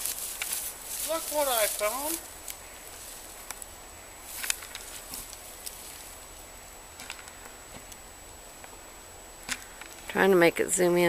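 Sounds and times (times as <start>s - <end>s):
footsteps in dry brush: 0.0s - 7.9s.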